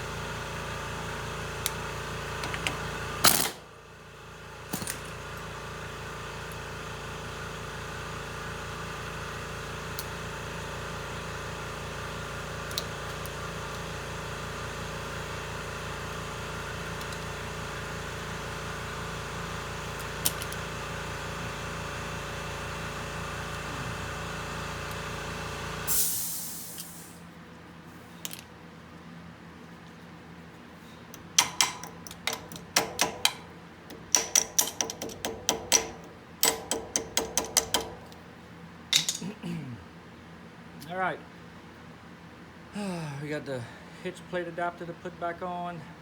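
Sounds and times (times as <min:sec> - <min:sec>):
air hissing: 0:25.9 - 0:27.2
sharp metallic clicks: 0:31.2 - 0:38.2.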